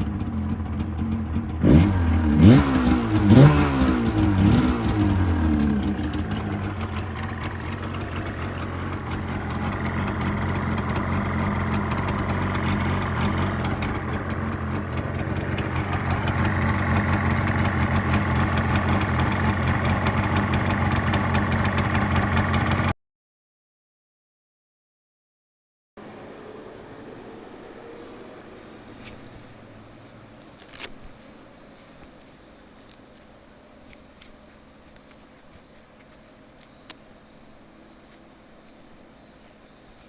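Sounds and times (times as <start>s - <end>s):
motorcycle engine idling: 0.0s - 22.9s.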